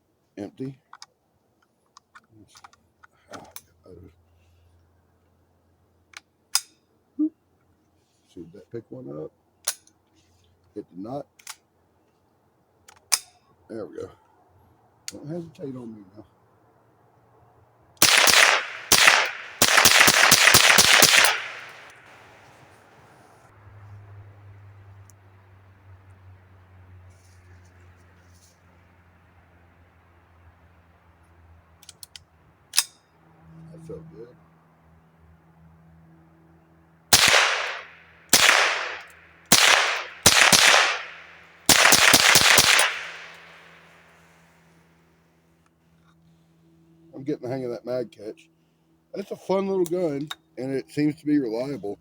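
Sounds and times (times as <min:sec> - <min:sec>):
rifle shots: 0:18.0 - 0:22.2, 0:37.1 - 0:43.9.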